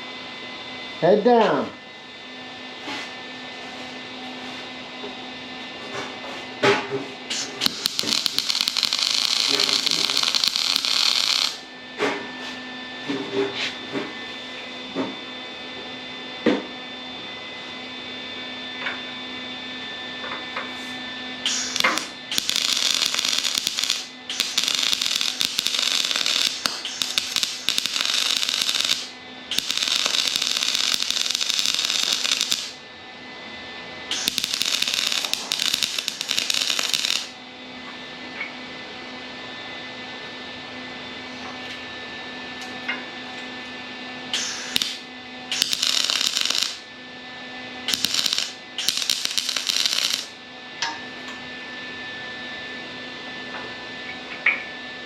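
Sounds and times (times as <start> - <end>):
welding crackling hiss: 7.3 - 11.6, 21.4 - 32.8, 34.1 - 37.4, 44.3 - 46.9, 47.9 - 50.4.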